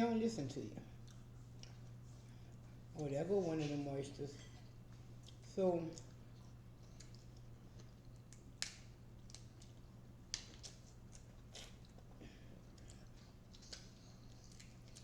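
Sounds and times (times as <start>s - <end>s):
low steady hum: 0.0s - 15.0s
chewing: 0.8s - 15.0s
crab shell cracking: 8.1s - 11.7s.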